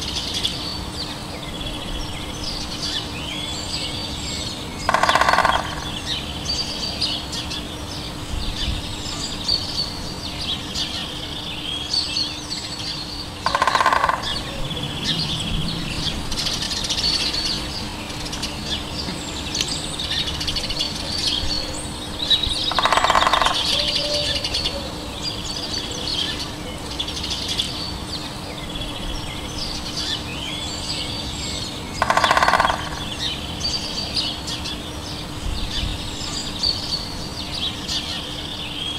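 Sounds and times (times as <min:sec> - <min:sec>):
small birds chirping and twittering: 0:00.0 - 0:38.9
harsh call of larger bird: 0:04.8 - 0:06.2, 0:13.4 - 0:14.7, 0:22.6 - 0:25.0, 0:32.0 - 0:33.4.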